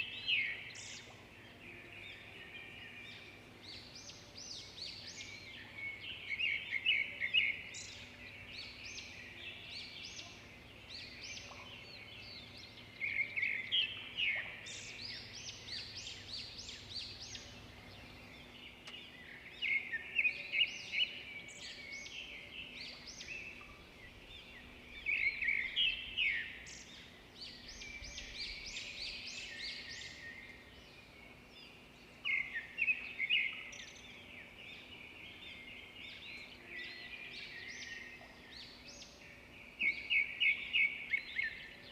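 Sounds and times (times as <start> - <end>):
songbirds chirping and twittering: 0.0 - 41.9.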